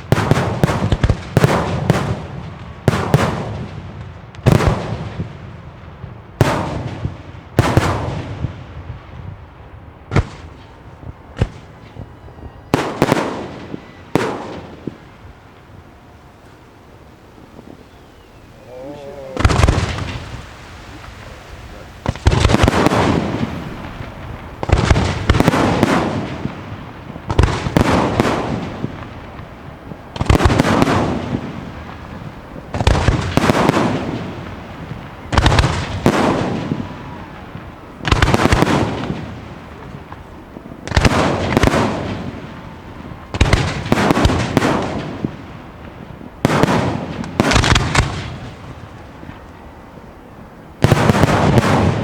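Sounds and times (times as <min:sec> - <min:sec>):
firework shells bursting: 0:22.0 - 0:49.6.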